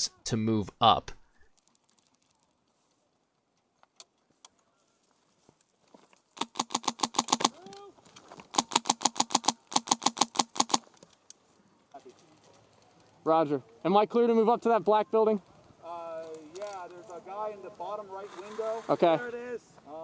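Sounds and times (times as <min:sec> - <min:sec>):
airsoft rifle full-auto bursts: 0:06.4 - 0:07.5, 0:08.5 - 0:10.8.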